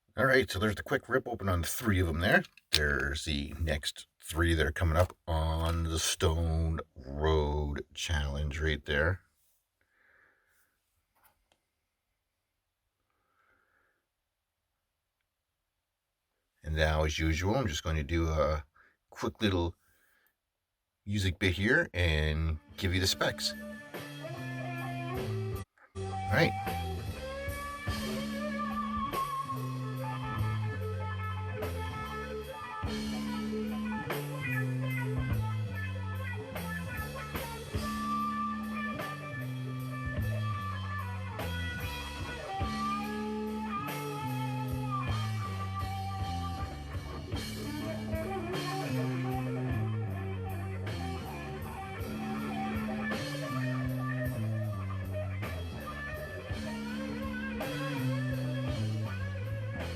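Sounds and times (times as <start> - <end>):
rock blues music: 22.8 - 59.9
electric guitar lead: 23.5 - 59.9.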